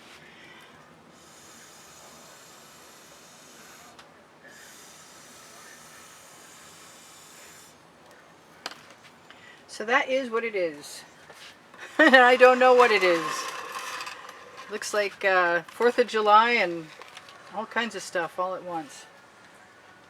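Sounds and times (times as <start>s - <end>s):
steady hiss: 0.0s - 7.9s.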